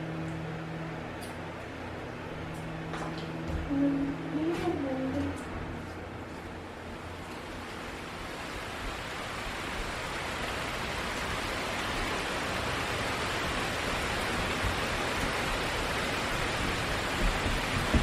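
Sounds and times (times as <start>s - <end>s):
heavy rain pouring: 6.5s - 18.0s.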